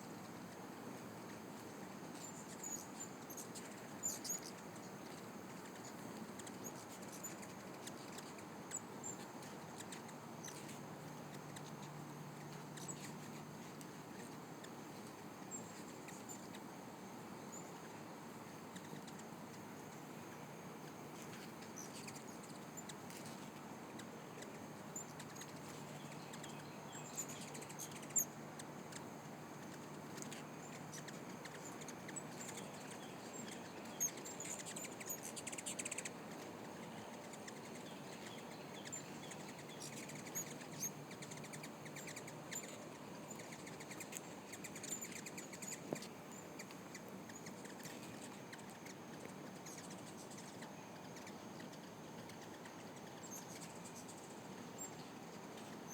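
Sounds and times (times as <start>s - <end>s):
hummingbirds chirping: 2.1s - 55.9s
hummingbird buzz: 29.6s - 51.3s.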